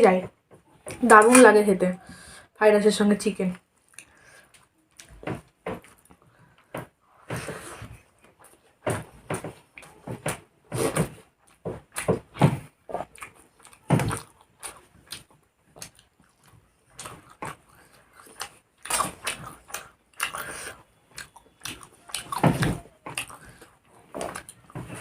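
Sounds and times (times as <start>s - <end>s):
chewing and mouth smacks: 3.8s - 5.2s, 5.8s - 6.3s, 12.9s - 24.7s.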